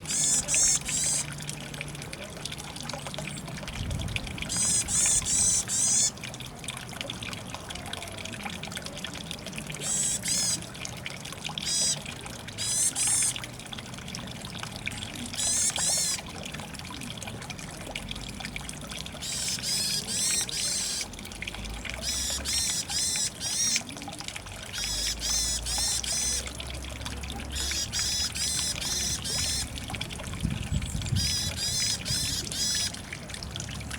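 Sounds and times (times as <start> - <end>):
bird calling warbling notes: 0.0 - 1.4, 4.4 - 6.2, 9.8 - 10.6, 11.6 - 12.0, 12.6 - 13.4, 15.4 - 16.2, 19.2 - 21.1, 22.0 - 24.1, 24.7 - 26.6, 27.5 - 29.9, 30.8 - 33.1.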